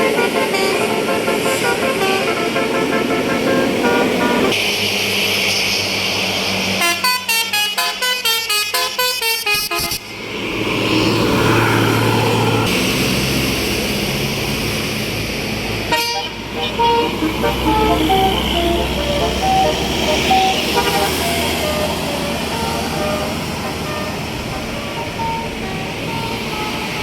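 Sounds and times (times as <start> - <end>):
bus horn playing melodies: 0.0 - 4.6, 6.7 - 10.2, 15.8 - 27.0
bus engine passing: 0.0 - 27.0.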